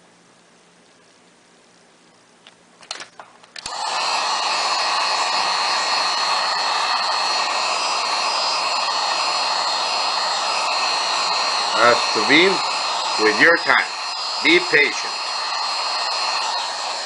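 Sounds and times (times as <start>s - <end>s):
hot-air blower running: 3.6s - 17.0s.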